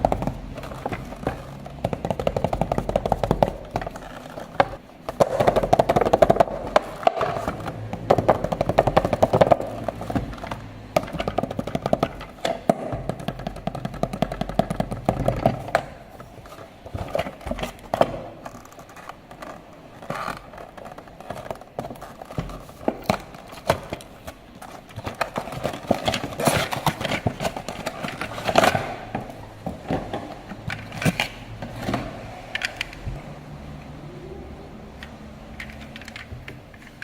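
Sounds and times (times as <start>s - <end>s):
hard objects knocking and scraping: 0.0s - 37.0s.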